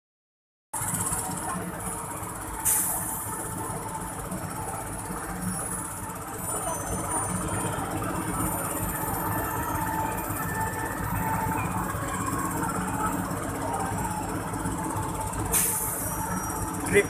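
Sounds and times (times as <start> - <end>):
heavy vehicle engine rumbling: 0.8 - 17.0.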